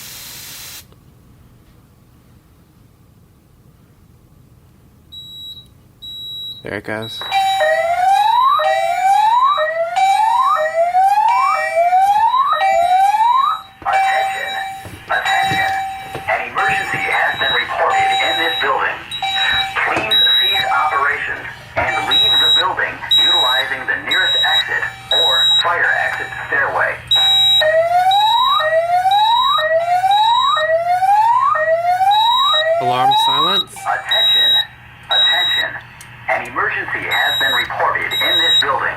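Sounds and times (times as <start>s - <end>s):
fire alarm whoop tone: 5.2s - 35.8s, 37.1s - 38.9s
steady alarm tone: 5.2s - 38.9s
alarm whoop tone: 7.3s - 20.9s.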